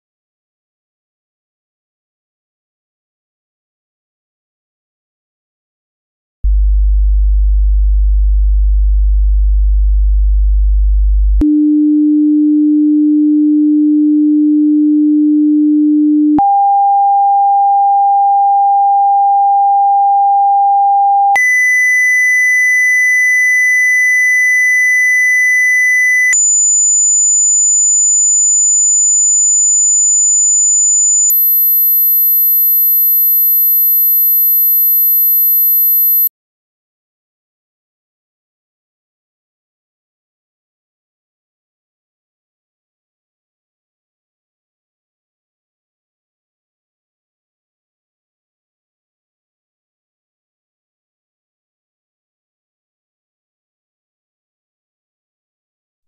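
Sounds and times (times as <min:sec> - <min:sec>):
pure test tones stepping upward: 0:31.3 - 0:36.3.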